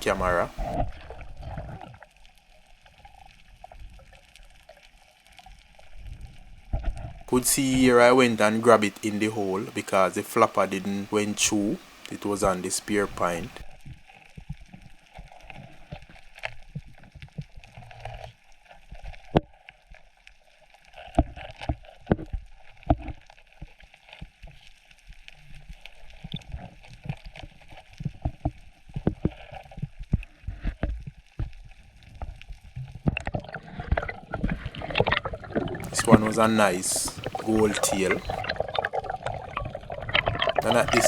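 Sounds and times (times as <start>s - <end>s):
water moving underwater: 0.0s - 41.0s.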